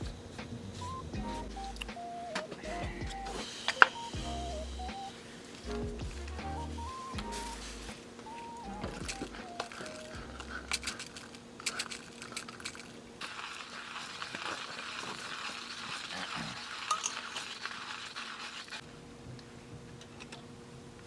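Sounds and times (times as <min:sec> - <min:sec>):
food sizzling in a pan: 0:13.2 - 0:18.8.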